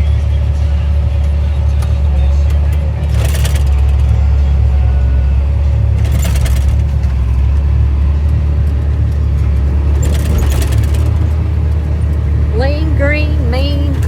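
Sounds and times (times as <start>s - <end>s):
tractor engine droning: 0.0s - 14.0s
short rattles: 2.5s - 4.6s, 5.9s - 7.8s, 8.7s - 12.5s.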